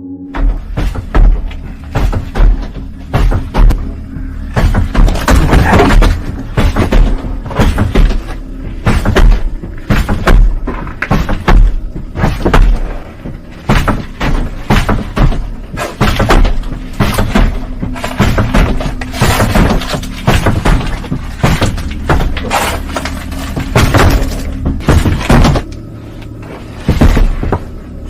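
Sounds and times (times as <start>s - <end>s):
faint steady hum: 0.0s - 28.0s
door banging and slamming: 0.3s - 25.7s.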